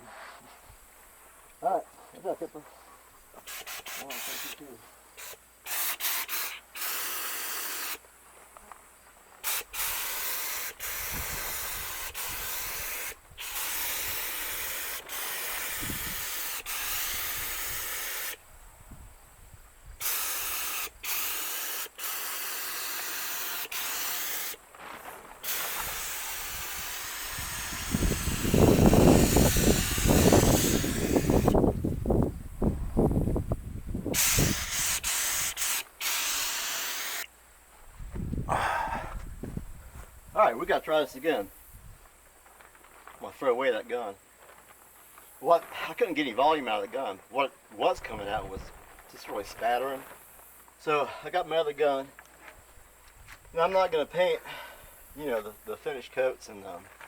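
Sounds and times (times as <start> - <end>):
spray gun hissing: 3.4 - 8.0, 9.4 - 18.4, 20.0 - 24.6, 25.4 - 31.6, 34.1 - 37.3
wind buffeting microphone: 10.8 - 14.6, 15.6 - 20.1, 25.7 - 35.5, 37.9 - 40.4, 48.0 - 48.9.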